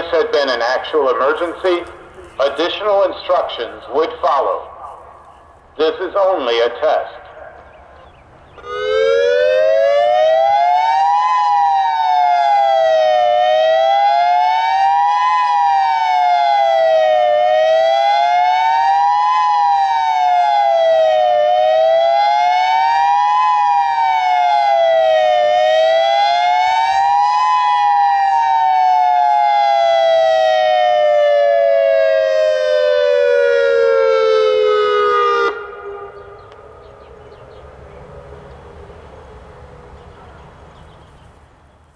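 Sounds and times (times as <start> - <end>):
electronic warning siren wailing: 8.6 - 37.2.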